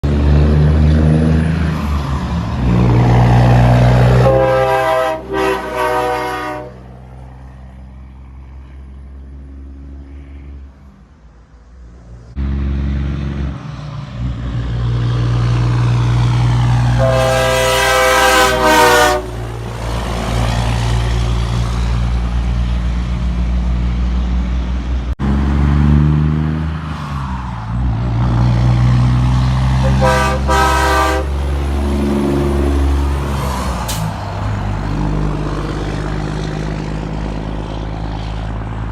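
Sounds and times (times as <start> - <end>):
air horn blasts: 4.1 - 6.9, 17.0 - 19.4, 29.8 - 31.4.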